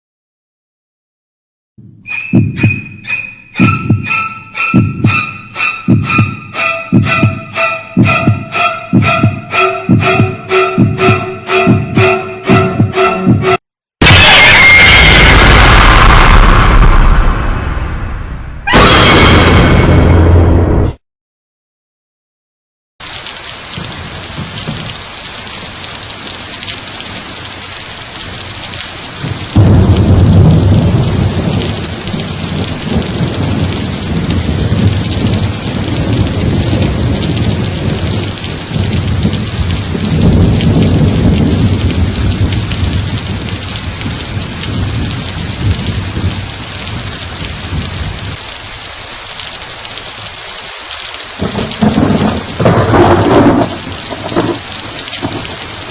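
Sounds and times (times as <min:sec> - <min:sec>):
heavy rain: 0:02.2 - 0:13.1, 0:14.0 - 0:20.8, 0:23.0 - 0:55.9
thunder clap and rumble: 0:03.6 - 0:13.0, 0:23.0 - 0:55.9.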